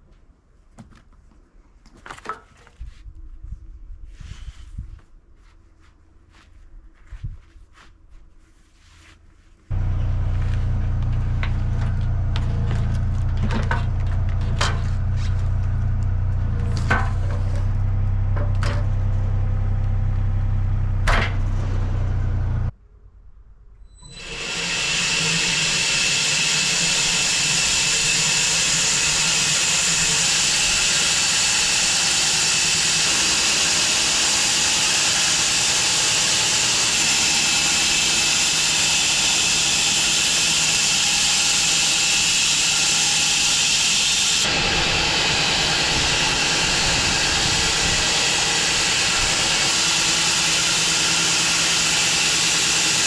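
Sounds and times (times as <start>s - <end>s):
sawmill machinery droning: 9.7s - 22.7s, 24.0s - 53.0s
saw hissing whine: 24.0s - 53.0s.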